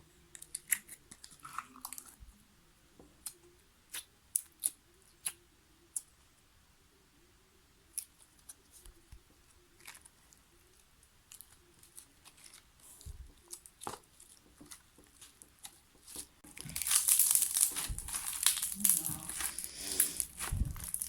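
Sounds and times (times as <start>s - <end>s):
slime popping and crackling: 11.3s - 21.0s.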